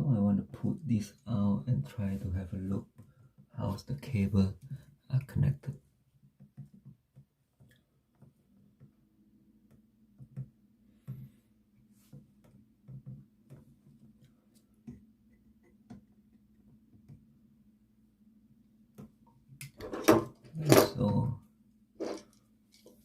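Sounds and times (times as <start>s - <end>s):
faint steady hum: 7.6s - 23.0s.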